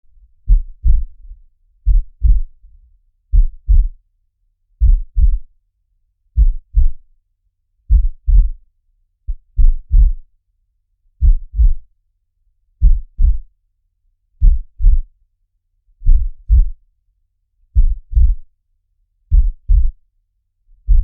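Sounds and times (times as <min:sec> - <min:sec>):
heartbeat double thumps: 0:00.4 - 0:02.6, 0:03.3 - 0:04.0, 0:04.8 - 0:05.5, 0:06.4 - 0:07.0, 0:07.9 - 0:08.6, 0:09.3 - 0:10.2, 0:11.2 - 0:11.8, 0:12.8 - 0:13.4, 0:14.4 - 0:15.1, 0:16.0 - 0:16.8, 0:17.8 - 0:18.4, 0:19.3 - 0:20.0.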